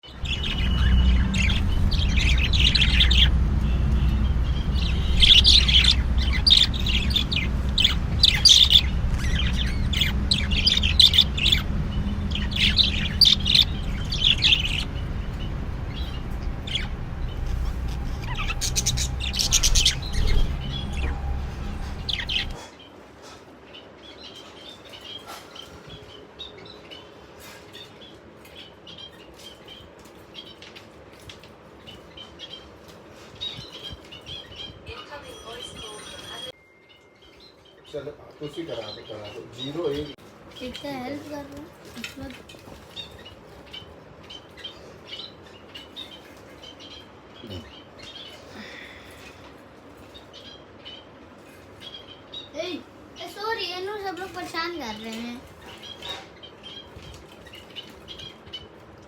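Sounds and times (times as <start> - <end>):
small birds chirping: 0.0 - 59.0
steady low rumble: 0.1 - 22.6.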